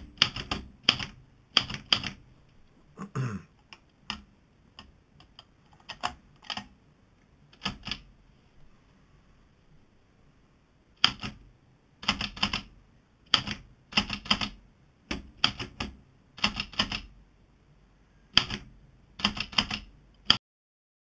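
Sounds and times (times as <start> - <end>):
typewriter keys clacking: 13.3 - 17.1, 19.2 - 20.4.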